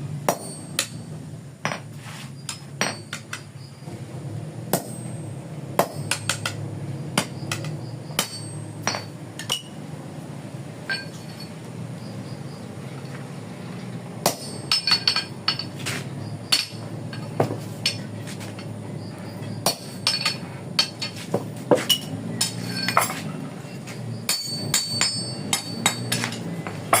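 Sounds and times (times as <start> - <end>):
hammer striking iron: 0.2 - 1.9, 2.5 - 3.5, 4.7 - 5.2, 5.8 - 6.6, 7.2 - 9.8, 14.2 - 18.7, 19.6 - 23.2, 24.2 - 27.0.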